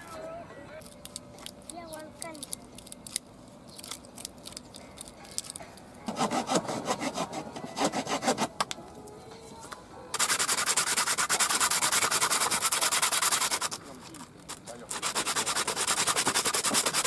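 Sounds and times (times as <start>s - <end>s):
rubbing strokes on leather: 10.2s - 17.0s.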